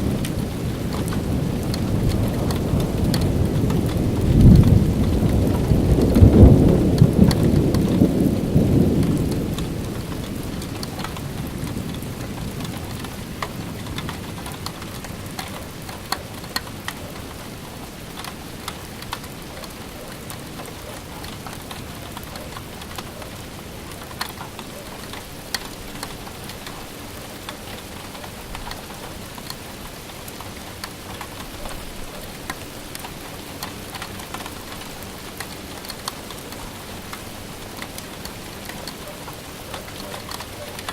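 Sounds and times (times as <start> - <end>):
raindrops ticking on a surface: 0.0 - 40.9
steady rain: 0.0 - 40.9
thunderclap rumbling: 0.0 - 40.9.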